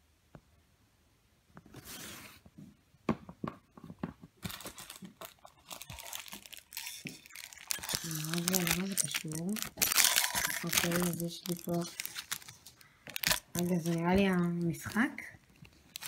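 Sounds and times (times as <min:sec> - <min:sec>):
packaging crinkling and tearing: 0:04.4 - 0:16.0.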